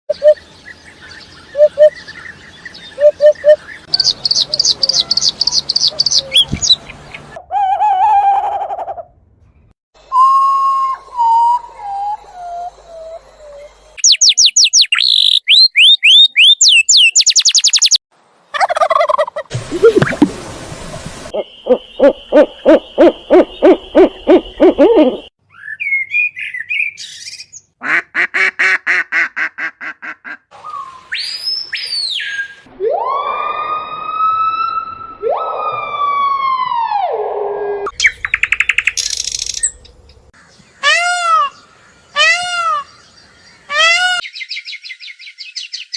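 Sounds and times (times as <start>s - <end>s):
whistled bird notes: 1.5s - 6.8s, 10.0s - 18.0s, 21.4s - 27.7s, 30.6s - 32.7s
drawn-out bird calls: 2.9s - 8.7s
bird trills and chatter: 3.0s - 7.2s.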